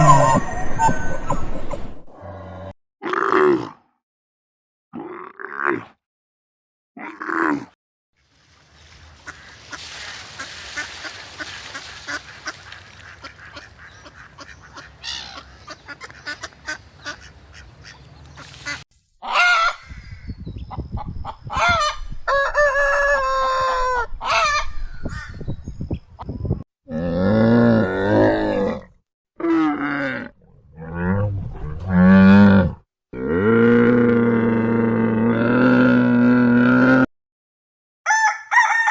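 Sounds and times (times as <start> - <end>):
geese honking: 9.2 - 19.8.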